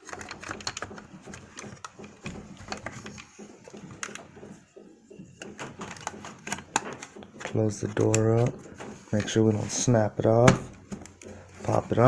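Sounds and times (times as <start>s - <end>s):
plastic toy parts clicking: 0.0s - 3.3s.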